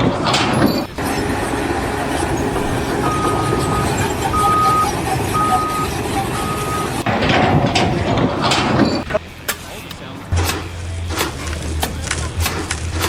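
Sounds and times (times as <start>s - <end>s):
reversing alarm beeping: 0.0s - 9.2s
heavy vehicle engine rumble: 0.0s - 13.0s.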